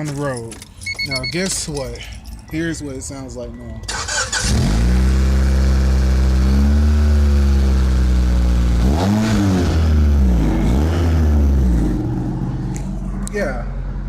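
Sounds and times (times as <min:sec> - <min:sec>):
car engine starting: 0:03.7 - 0:14.0
car engine idling and revving: 0:03.8 - 0:14.0.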